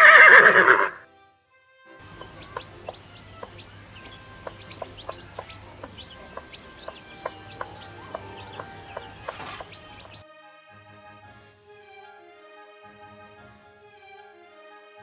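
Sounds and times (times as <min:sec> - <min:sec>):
background hiss: 0:02.0 - 0:10.2
chickens clucking: 0:02.0 - 0:10.2.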